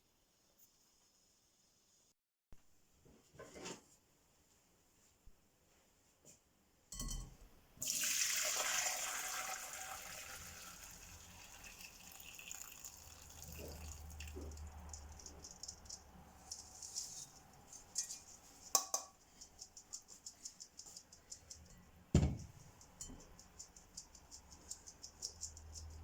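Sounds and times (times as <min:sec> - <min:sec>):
water pouring: 0:07.8 - 0:15.2
knock: 0:22.2 - 0:22.6.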